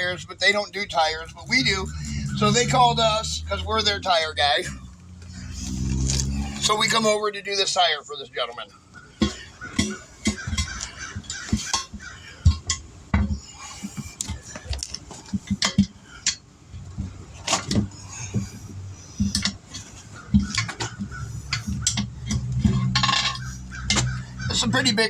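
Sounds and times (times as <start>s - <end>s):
metal tools clinking: 19.2s - 24.2s.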